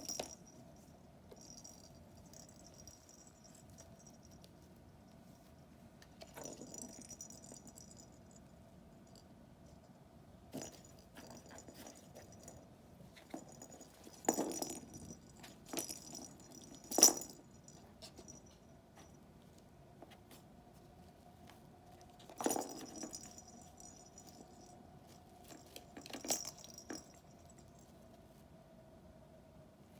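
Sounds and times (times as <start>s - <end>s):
toys rattling and jingling: 0.0s - 4.5s, 6.2s - 8.4s, 10.5s - 18.7s, 22.0s - 28.0s.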